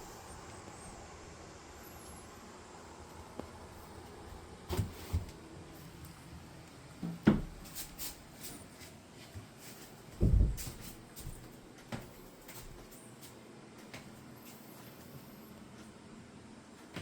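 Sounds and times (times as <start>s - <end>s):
heavy low thump: 10.2s - 10.8s.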